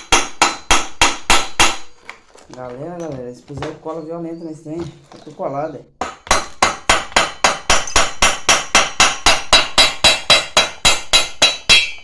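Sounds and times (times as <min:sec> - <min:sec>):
rapid hammer blows on metal: 0:06.1 - 0:12.0.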